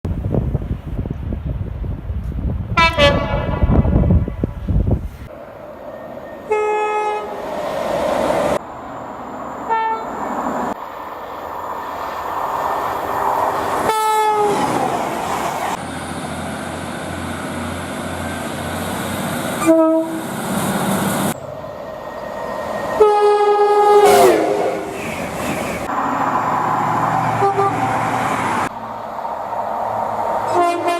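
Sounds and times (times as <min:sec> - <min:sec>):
rumble of passing trains: 0:00.1 - 0:30.9
train horn blasts: 0:02.8 - 0:04.5, 0:06.4 - 0:07.4, 0:09.7 - 0:10.2, 0:13.9 - 0:14.6, 0:19.6 - 0:20.3, 0:23.0 - 0:24.9, 0:27.4 - 0:27.9, 0:30.5 - 0:30.9.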